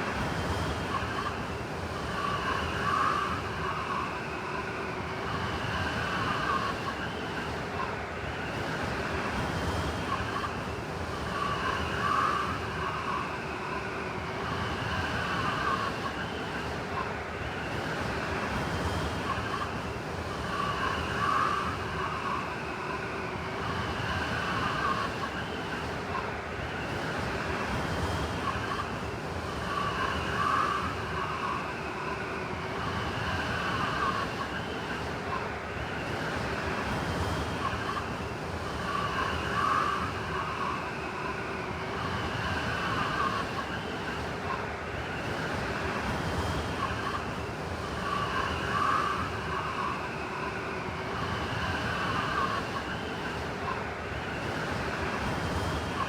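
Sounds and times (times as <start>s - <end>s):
blizzard wind howling: 0.0s - 56.0s.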